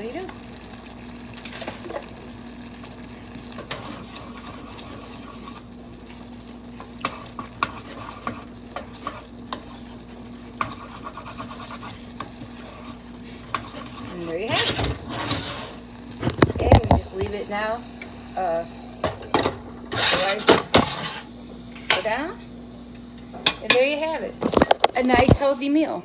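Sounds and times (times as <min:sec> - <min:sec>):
spoon scraping a pan: 0:07.0 - 0:10.0, 0:10.6 - 0:17.6, 0:19.9 - 0:22.3, 0:23.4 - 0:25.5.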